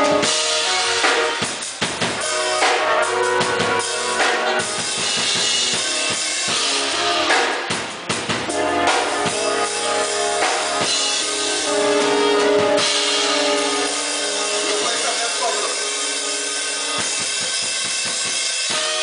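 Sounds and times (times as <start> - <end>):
drum kit: 0.0 - 19.0
guitar: 0.0 - 19.0
held pitched notes: 8.4 - 19.0.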